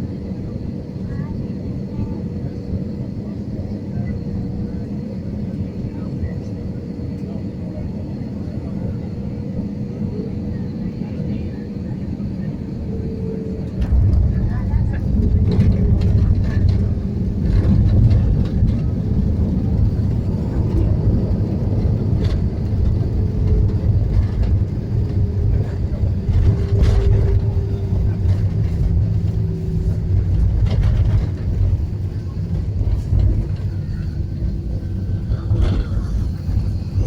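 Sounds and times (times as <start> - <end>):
airliner low rumble: 0.0 - 37.0.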